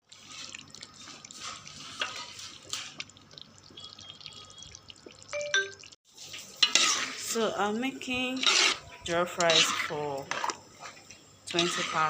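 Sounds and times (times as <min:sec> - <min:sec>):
water trickling and dripping: 0:00.0 - 0:06.0.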